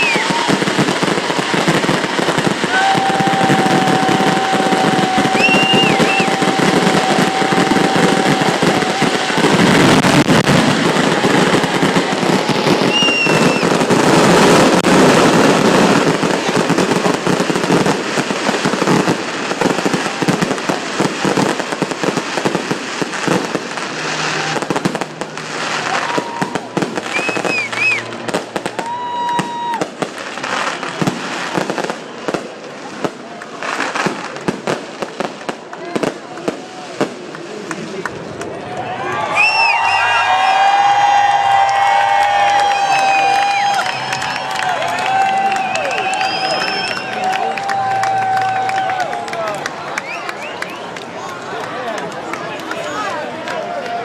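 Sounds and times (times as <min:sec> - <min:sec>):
fireworks whistles: 0:00.0 - 0:32.0, 0:42.5 - 0:47.5
fireworks bangs and crackling: 0:00.0 - 0:38.8, 0:39.4 - 0:54.0.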